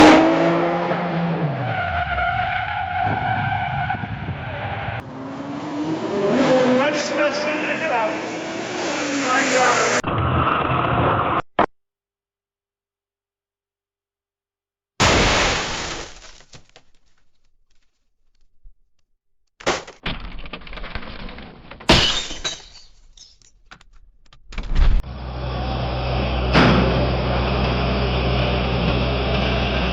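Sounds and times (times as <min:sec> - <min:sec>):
car engine: 0:00.0 - 0:11.4, 0:24.6 - 0:29.9
car tyres screeching: 0:00.0 - 0:11.4
car crash: 0:15.0 - 0:16.9, 0:26.4 - 0:27.4
glass shattering: 0:21.8 - 0:23.6.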